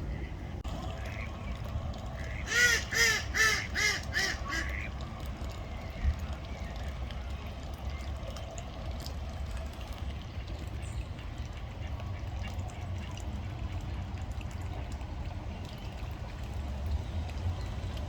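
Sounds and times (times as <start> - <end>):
low background rumble: 0.0 - 18.0
duck quacking: 2.2 - 4.9.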